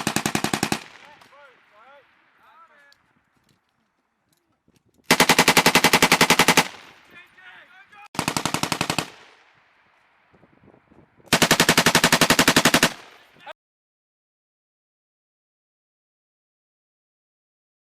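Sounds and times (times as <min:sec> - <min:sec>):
machine gun automatic fire: 0:00.0 - 0:01.3, 0:05.1 - 0:07.0, 0:08.2 - 0:09.4, 0:11.3 - 0:13.3
gunfire echo: 0:00.0 - 0:03.0, 0:05.1 - 0:10.6, 0:11.2 - 0:13.5.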